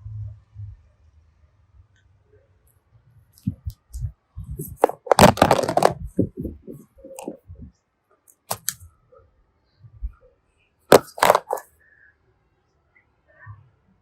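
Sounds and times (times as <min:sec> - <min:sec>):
sharp cracks and clicks: 0:08.3 - 0:08.8.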